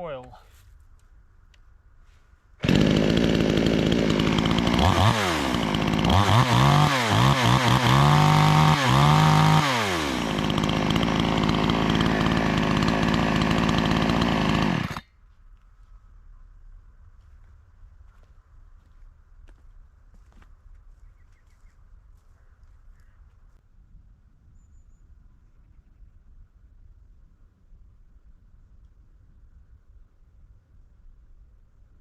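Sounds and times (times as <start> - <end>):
chainsaw engine revving: 2.6 - 15.0.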